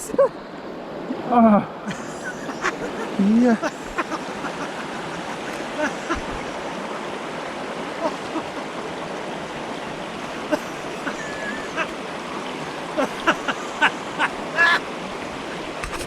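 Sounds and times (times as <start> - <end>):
mountain stream running: 0.0 - 16.0.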